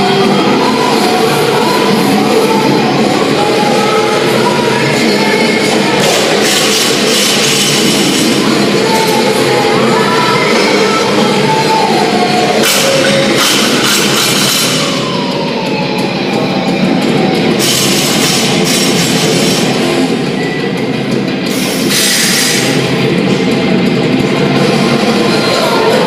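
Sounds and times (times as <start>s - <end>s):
heavy metal rock music: 0.0s - 26.0s.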